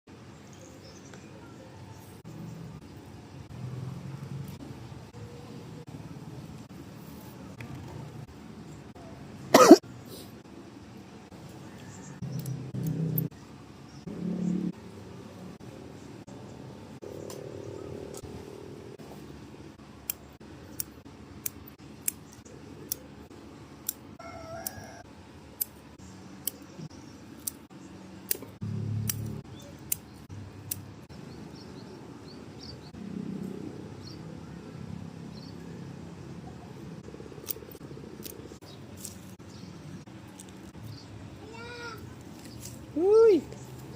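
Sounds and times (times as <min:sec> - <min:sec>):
pruning scissors snipping: 0:20.0 - 0:23.1, 0:27.4 - 0:30.9, 0:37.4 - 0:39.3.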